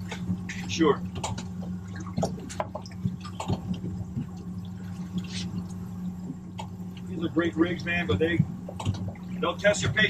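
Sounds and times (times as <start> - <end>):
steady low hum: 0.0 - 10.0
water lapping against hull: 0.0 - 10.0.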